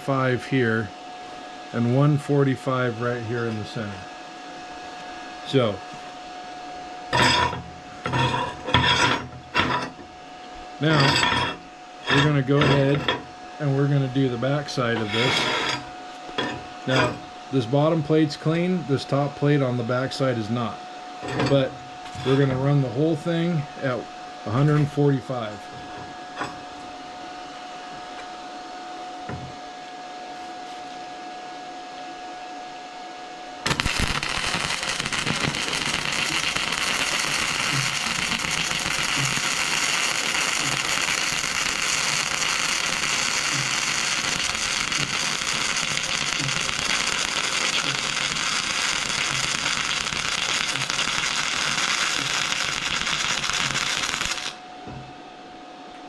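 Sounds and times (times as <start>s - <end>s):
welder hum: 0.0s - 31.0s, 33.5s - 55.3s
welding arc crackling sizzle: 1.7s - 20.5s, 33.6s - 54.7s.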